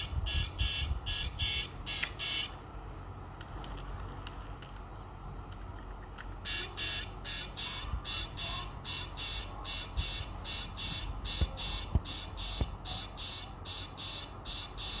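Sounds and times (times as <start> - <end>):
electronic alarm beeping: 0.0 - 2.6, 6.4 - 15.0.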